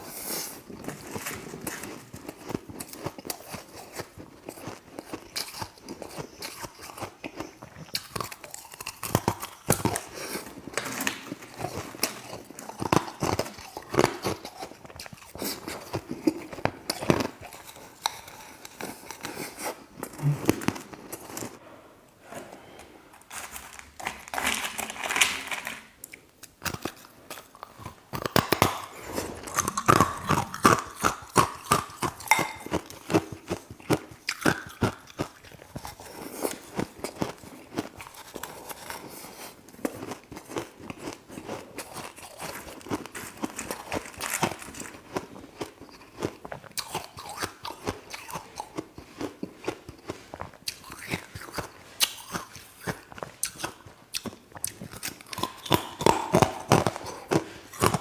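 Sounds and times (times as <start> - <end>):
person chewing ice: 0.0 - 21.6, 22.5 - 58.0.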